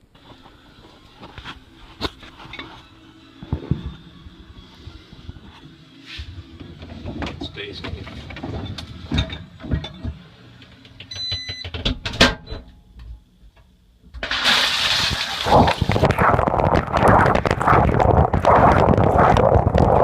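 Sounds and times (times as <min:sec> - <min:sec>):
dishes clattering in dishwasher: 0:07.0 - 0:10.2
water spray hissing and splashing: 0:14.4 - 0:16.3.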